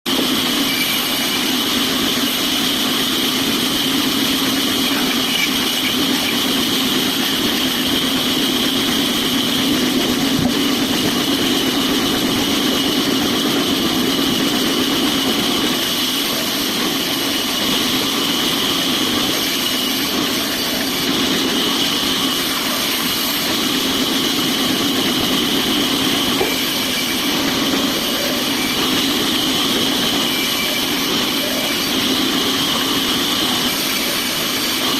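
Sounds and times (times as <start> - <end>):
sawmill machinery humming: 0.1 - 34.9.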